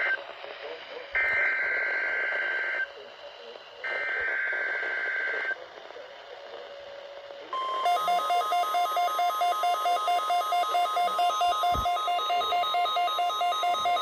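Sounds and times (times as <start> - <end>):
faint radio static: 0.0 - 14.0
pulsing alarm beep: 7.6 - 14.0
steady alarm tone: 7.6 - 14.0.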